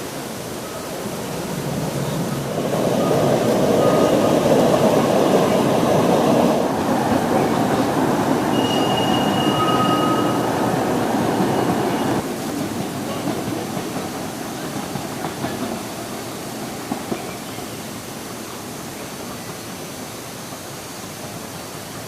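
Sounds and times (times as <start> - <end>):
wheels rumbling on rail: 0.0 - 22.0
faint wheel squeal: 8.5 - 10.6.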